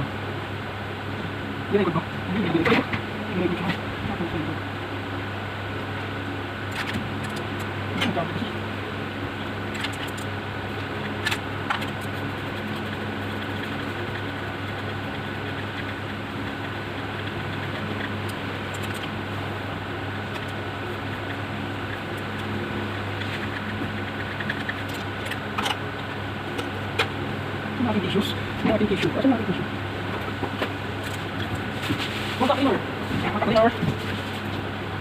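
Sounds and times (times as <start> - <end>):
mechanical hum: 0.0 - 35.0.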